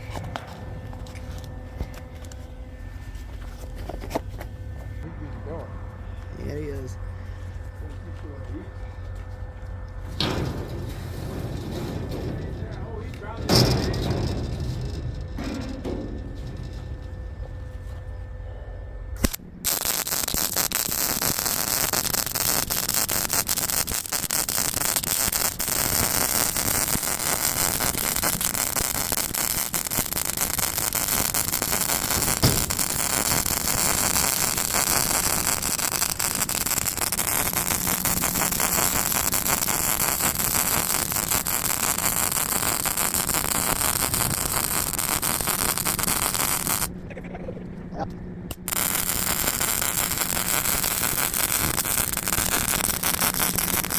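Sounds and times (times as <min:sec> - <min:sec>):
welder crackling sizzle: 0:19.2 - 0:46.9, 0:48.5 - 0:53.9.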